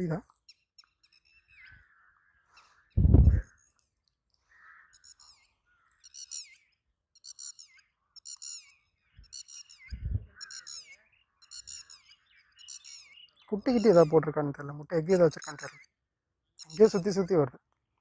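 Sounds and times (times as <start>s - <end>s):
low thump: 3.0s - 3.4s
bird giving sharp high calls: 9.3s - 14.2s
person speaking: 16.7s - 17.5s.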